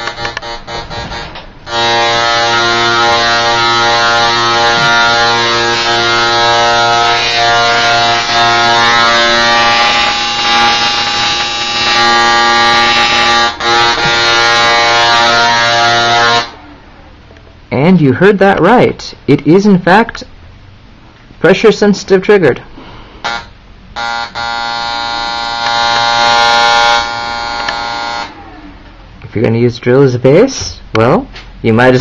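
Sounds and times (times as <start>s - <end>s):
electric spark buzz: 0.0s - 16.6s, 23.2s - 28.4s.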